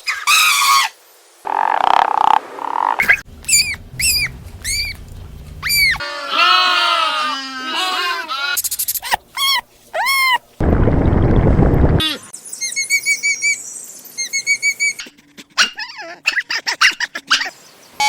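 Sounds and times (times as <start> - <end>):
high-pitched farm animal calls: 3.0 - 10.4.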